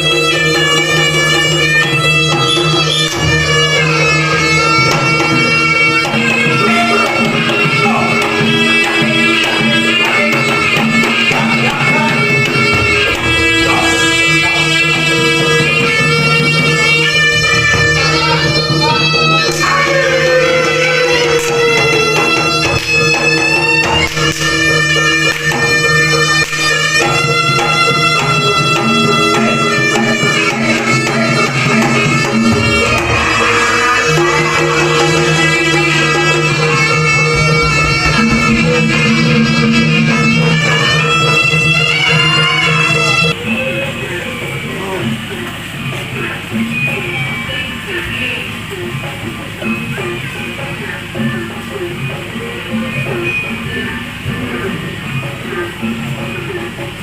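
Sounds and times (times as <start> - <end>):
struck percussion: 0.0 - 43.7
hand drums beat: 0.0 - 57.0
shrill reed shawm melody: 0.0 - 57.0.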